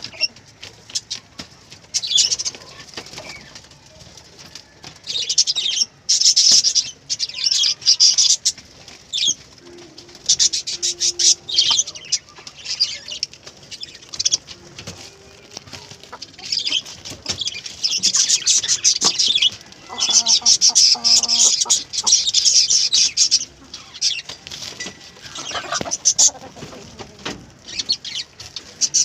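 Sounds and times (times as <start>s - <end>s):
chickens flapping wings: 0.0s - 5.4s, 12.4s - 22.1s.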